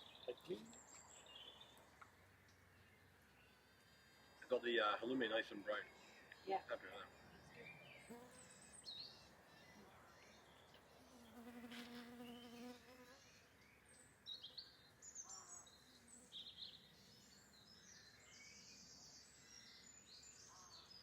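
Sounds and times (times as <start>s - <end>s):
small birds chirping: 0.0s - 21.0s
fly buzzing past: 8.0s - 8.6s, 10.9s - 13.4s.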